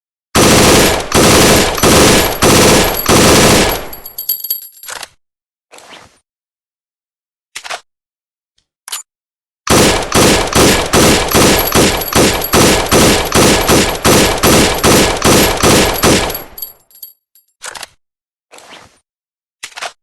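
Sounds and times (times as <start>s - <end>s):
rifle firing shots: 0.4s - 4.2s, 9.7s - 16.7s.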